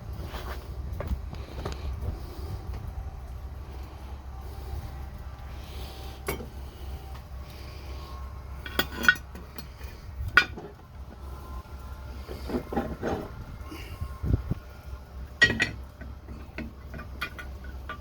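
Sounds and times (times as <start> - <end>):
metal lid clinking and clanking: 8.6 - 10.8, 15.4 - 15.8, 16.4 - 18.0.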